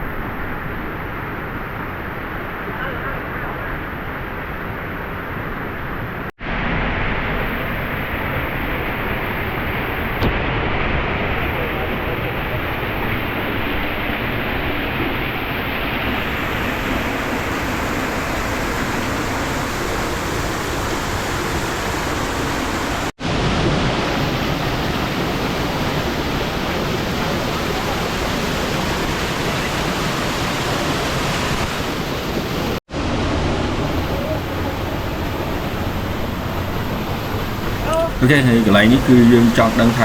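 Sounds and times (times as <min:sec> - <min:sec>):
waterfall rushing: 0:16.2 - 0:23.1, 0:24.1 - 0:32.8, 0:37.3 - 0:40.0.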